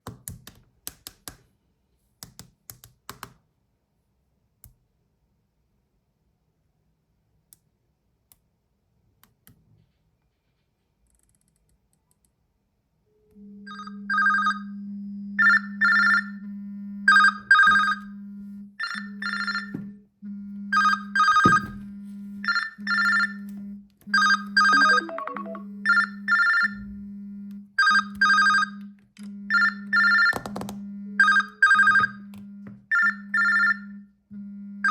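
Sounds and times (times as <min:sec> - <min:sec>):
smartphone ringtone: 0:24.2 - 0:26.8.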